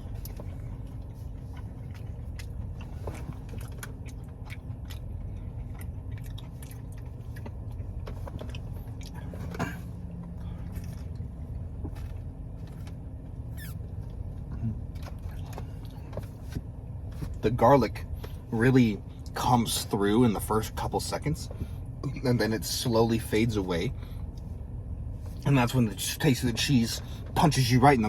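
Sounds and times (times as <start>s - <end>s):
close-up chewing: 0.0s - 16.6s
steady low rumble: 0.0s - 28.0s
wet mouth clicks and smacks: 1.5s - 9.2s.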